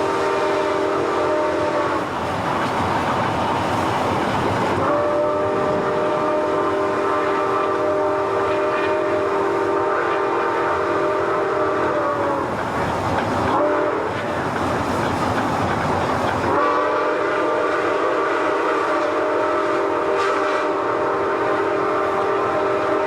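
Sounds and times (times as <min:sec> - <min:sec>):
steam locomotive whistle: 0:00.0 - 0:02.2, 0:04.7 - 0:12.6, 0:13.4 - 0:14.6, 0:16.3 - 0:23.0
running locomotive rumble: 0:00.0 - 0:23.0.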